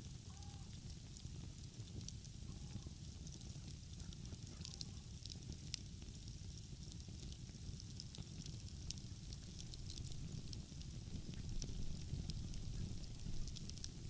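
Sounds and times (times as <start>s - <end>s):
wood fire crackling and popping: 0.0s - 14.0s
steady low rumble: 8.8s - 14.0s.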